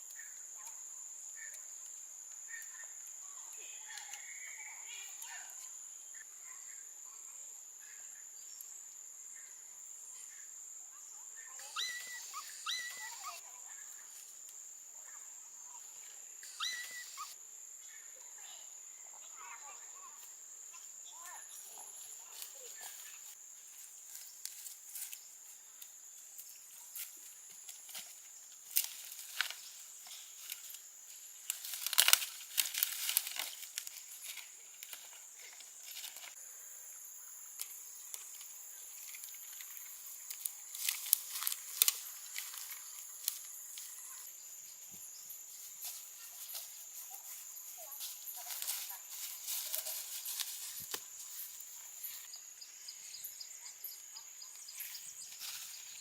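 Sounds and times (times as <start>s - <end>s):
high-pitched insect drone: 11.5s - 13.6s, 15.0s - 56.0s
crackling and rustling: 21.5s - 36.4s, 37.6s - 44.3s, 45.5s - 52.3s.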